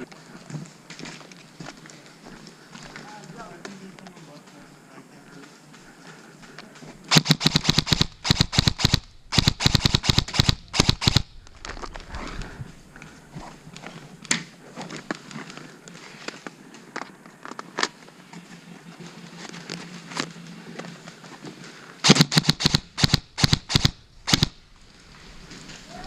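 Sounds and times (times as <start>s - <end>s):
airsoft guns firing: 7.1s - 11.3s, 22.0s - 24.6s.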